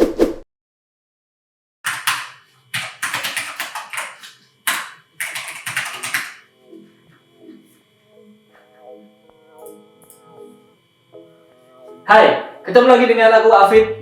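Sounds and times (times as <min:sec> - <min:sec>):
mechanical keyboard typing: 0:01.9 - 0:06.4.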